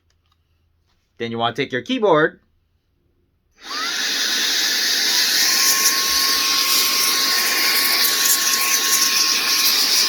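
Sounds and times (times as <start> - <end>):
car vacuum motor whining: 3.6 - 10.0.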